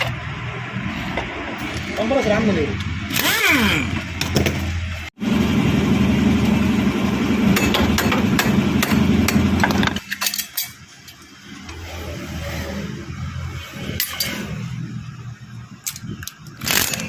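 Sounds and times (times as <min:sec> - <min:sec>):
motorcycle engine with knocking ticks: 0:07.5 - 0:09.9.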